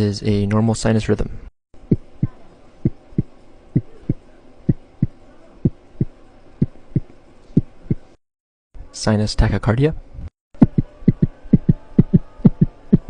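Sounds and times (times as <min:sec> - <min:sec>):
man beatboxing a heartbeat: 0:10.6 - 0:13.0.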